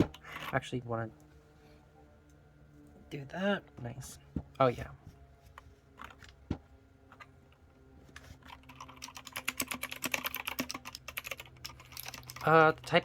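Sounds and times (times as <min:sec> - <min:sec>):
mechanical keyboard typing: 0:08.4 - 0:13.0.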